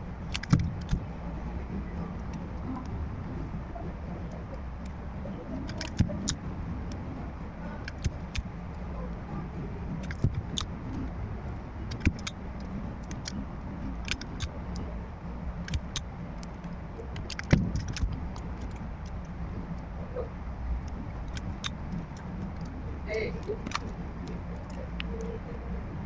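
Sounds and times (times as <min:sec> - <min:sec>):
low background rumble: 0:00.0 - 0:26.0
small clicks and taps of tools: 0:00.3 - 0:01.2, 0:05.6 - 0:07.1, 0:07.8 - 0:08.9, 0:10.0 - 0:15.0, 0:15.6 - 0:19.9, 0:20.8 - 0:22.8, 0:23.4 - 0:25.3.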